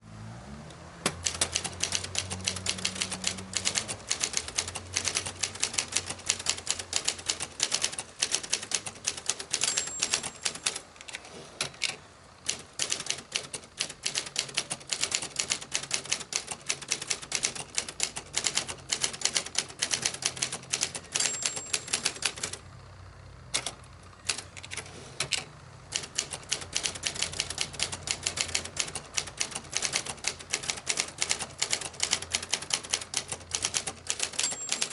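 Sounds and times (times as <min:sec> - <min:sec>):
typewriter keys striking: 0:01.0 - 0:22.6, 0:23.6 - 0:34.9
typewriter bell ding: 0:09.4 - 0:10.8, 0:20.9 - 0:22.6, 0:33.8 - 0:34.9.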